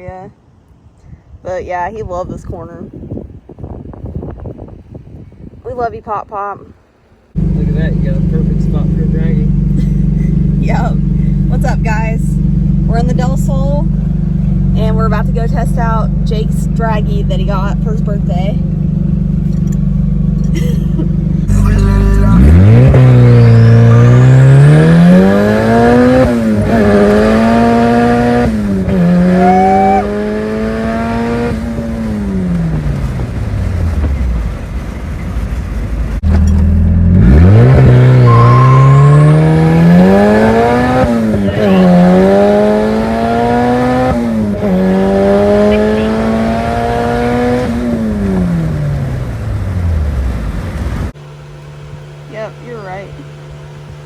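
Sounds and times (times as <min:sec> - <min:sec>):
car engine accelerating hard: 0:07.3 - 0:54.0
faint high turbo whistle: 0:23.1 - 0:24.5, 0:29.4 - 0:30.1, 0:38.1 - 0:40.2.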